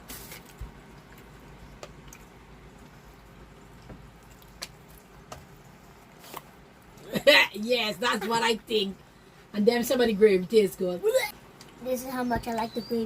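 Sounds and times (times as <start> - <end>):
eating clicks and wet smacks: 0.5 - 2.9, 3.5 - 7.0.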